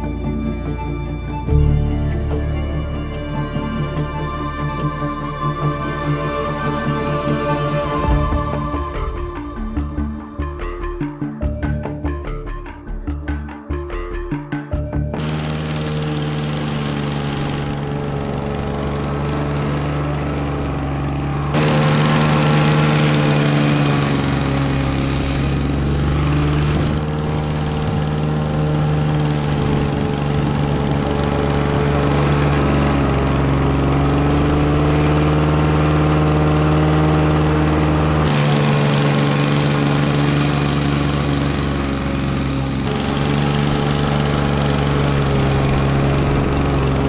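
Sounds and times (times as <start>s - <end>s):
lawn mower engine running: 15.1s - 47.0s.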